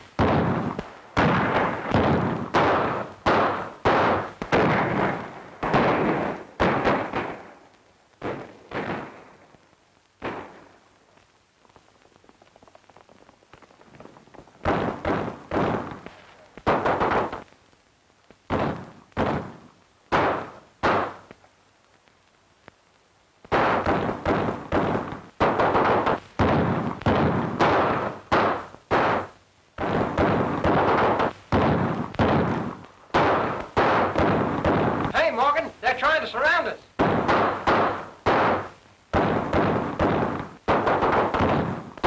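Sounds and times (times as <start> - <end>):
gunshot bangs with echo: 0.2 - 7.5, 8.2 - 9.2, 14.6 - 17.4, 18.5 - 21.3, 23.5 - 35.4, 37.0 - 41.9.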